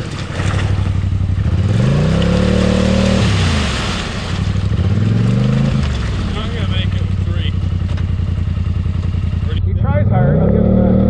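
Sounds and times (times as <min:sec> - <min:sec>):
atv engine idling and revving: 0:00.0 - 0:11.0.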